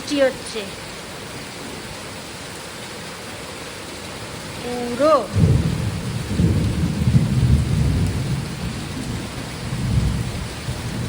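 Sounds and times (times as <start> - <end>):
heavy rain hissing: 0.0 - 11.0
thunder rumbling: 4.6 - 11.0.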